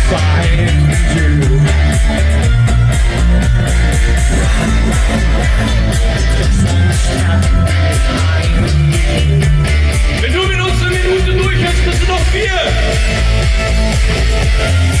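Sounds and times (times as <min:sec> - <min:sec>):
rock band playing: 0:00.0 - 0:15.0
person singing: 0:04.3 - 0:13.0.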